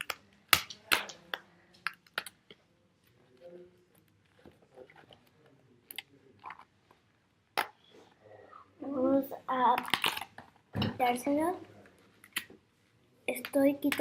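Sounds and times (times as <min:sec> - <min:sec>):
quiet fiddling with pieces: 0:00.0 - 0:14.0.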